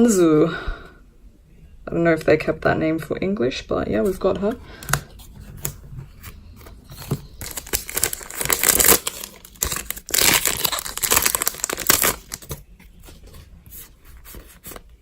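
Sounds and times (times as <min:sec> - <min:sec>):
foil wrapper tearing and crinkling: 0:06.8 - 0:12.7.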